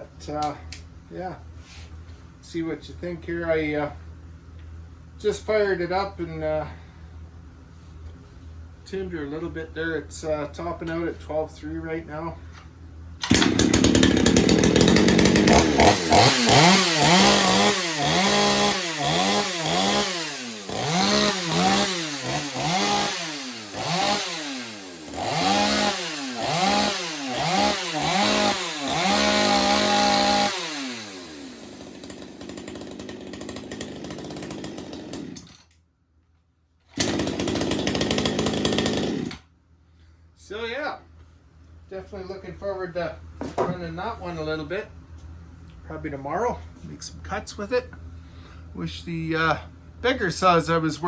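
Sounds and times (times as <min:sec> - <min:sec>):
chainsaw engine revving: 0:13.2 - 0:35.6, 0:36.9 - 0:39.4.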